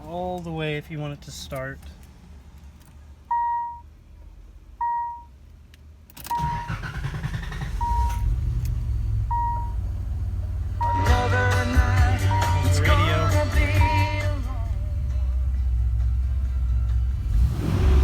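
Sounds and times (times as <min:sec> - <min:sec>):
car engine cranking and idling: 0:00.0 - 0:18.0
dashboard warning chime beeping: 0:03.2 - 0:03.9, 0:04.8 - 0:05.4, 0:06.2 - 0:08.3, 0:09.2 - 0:09.8, 0:10.7 - 0:14.3.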